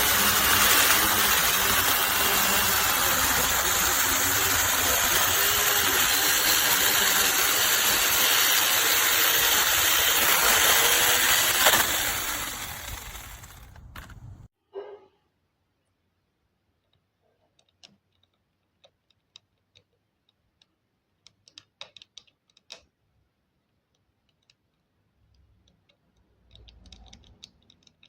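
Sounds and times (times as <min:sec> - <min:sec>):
faint clicks and ticks: 0:16.8 - 0:28.0.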